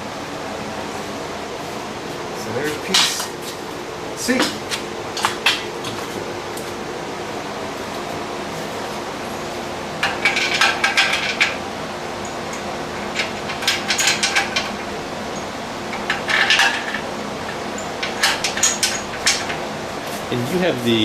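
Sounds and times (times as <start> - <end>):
fan hum: 0.0 - 21.0
metal clinking and rattling: 10.0 - 11.6, 12.2 - 19.7.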